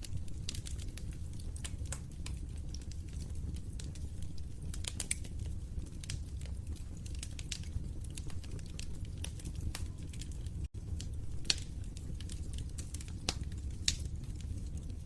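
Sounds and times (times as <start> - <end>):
fireplace fire crackling: 0.0 - 15.0.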